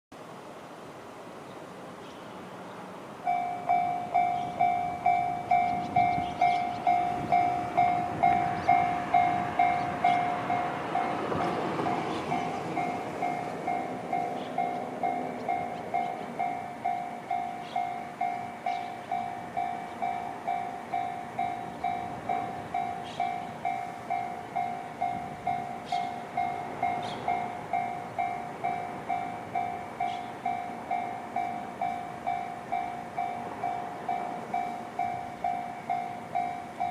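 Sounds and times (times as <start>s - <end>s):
level-crossing warning bell: 3.2s - 36.9s
passing vehicle: 6.6s - 16.6s.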